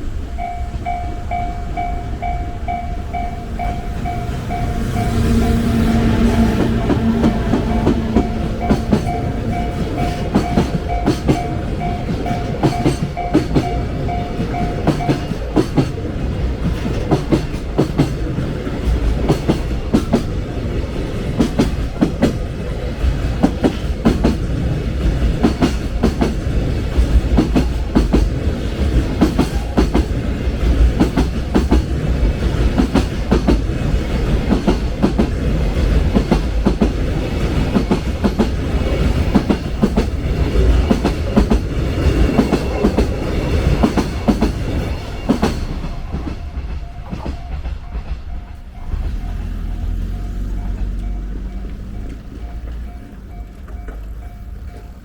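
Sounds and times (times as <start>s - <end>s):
train wheels clacking on rails: 0.0s - 55.0s
level crossing alarm ringing: 0.4s - 15.5s.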